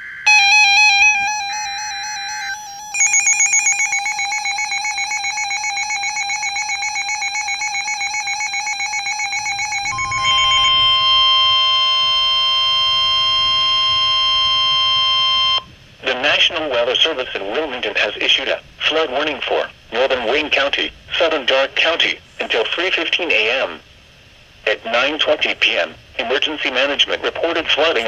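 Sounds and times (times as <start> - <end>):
pulsing electronic alarm beep: 0.0 - 15.7
steady single-pitch alert tone: 0.0 - 15.7.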